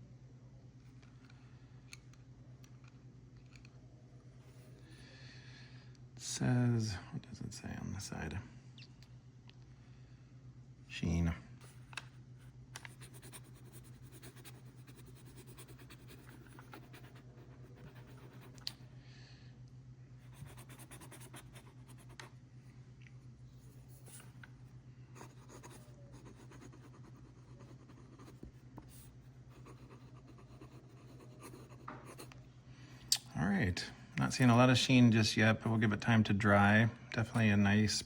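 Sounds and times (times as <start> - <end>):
steady low hum: 0.0 - 38.0
pen scratching on paper: 12.9 - 18.6, 20.3 - 22.2, 25.2 - 29.0, 29.6 - 32.3.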